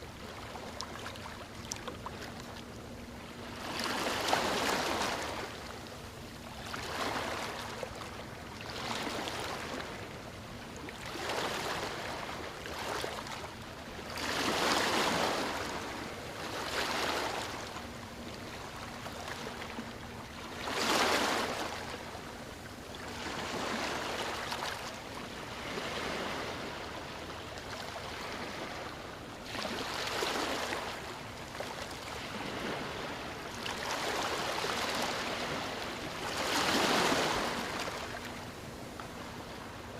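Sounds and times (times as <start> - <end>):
ocean waves breaking on beach: 14.1 - 17.7, 23.1 - 27.2, 27.9 - 39.9.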